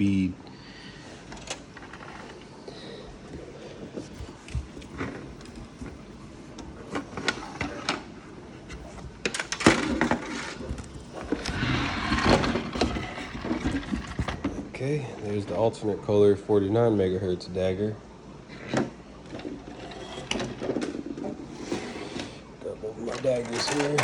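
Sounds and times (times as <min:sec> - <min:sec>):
rustling: 0:03.2 - 0:14.7
plastic toy parts clicking and clattering: 0:23.1 - 0:24.0.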